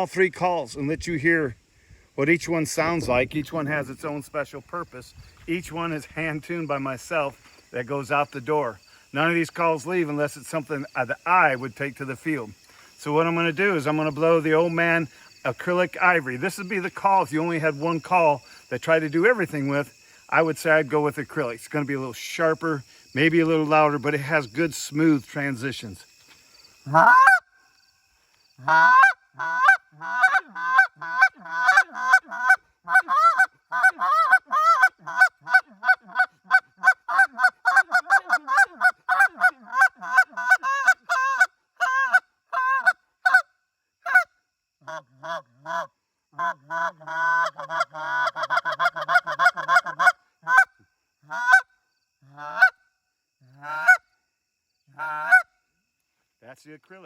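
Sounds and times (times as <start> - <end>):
goose call honks and clucks: 26.9 - 27.5, 28.6 - 52.8, 53.4 - 54.1, 54.9 - 55.5.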